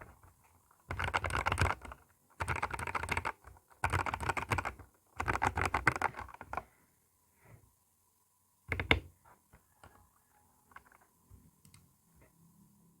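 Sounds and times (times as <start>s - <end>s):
mechanical keyboard typing: 0.9s - 6.6s.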